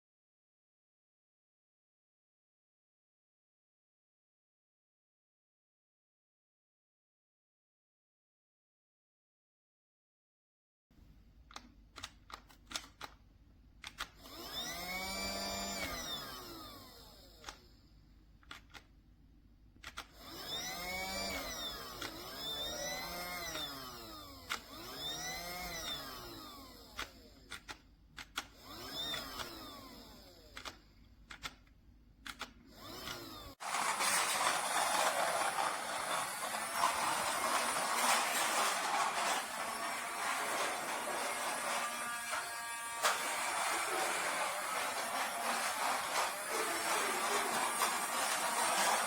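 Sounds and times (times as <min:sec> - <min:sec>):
plastic clicks: 0:11.4 - 0:14.3, 0:17.4 - 0:17.7, 0:18.4 - 0:19.0, 0:19.8 - 0:20.2, 0:26.9 - 0:29.7, 0:30.5 - 0:33.3
toy vacuum motor whirring: 0:13.8 - 0:18.9, 0:19.8 - 0:49.0.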